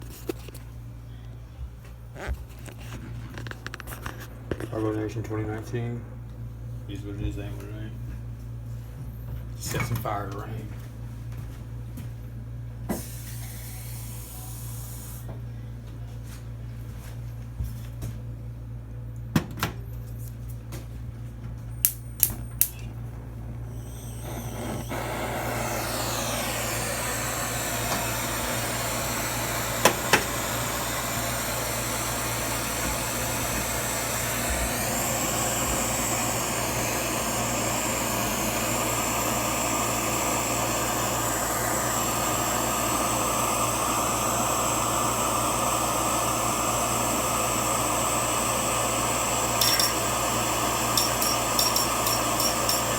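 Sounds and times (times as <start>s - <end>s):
burner clicks: 21.8s - 52.9s
furnace blower rushing and whining: 22.6s - 52.9s.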